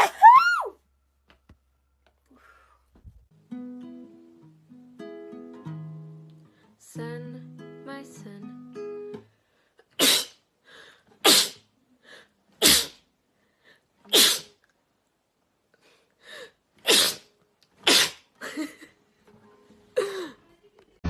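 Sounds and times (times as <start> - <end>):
person sneezing: 10.0 - 10.4, 11.2 - 11.6, 12.6 - 13.0, 14.1 - 14.6, 16.8 - 18.3.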